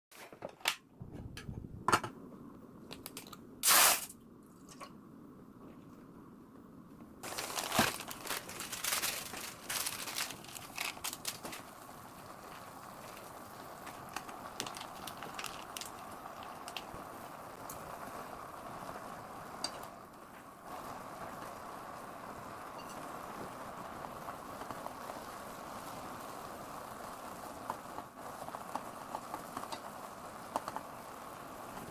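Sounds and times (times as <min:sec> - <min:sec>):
hiss with small crackles: 0:02.4 - 0:31.9
noodle packet crinkling and tearing: 0:07.2 - 0:17.0.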